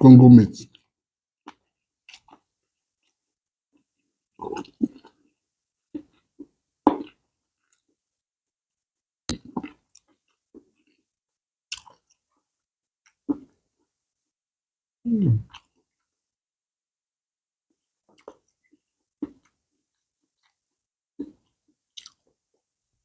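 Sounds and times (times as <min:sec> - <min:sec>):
person chewing and smacking: 0:01.4 - 0:03.2, 0:03.8 - 0:05.2, 0:05.9 - 0:07.9, 0:11.7 - 0:12.3, 0:18.1 - 0:19.6, 0:22.0 - 0:22.4.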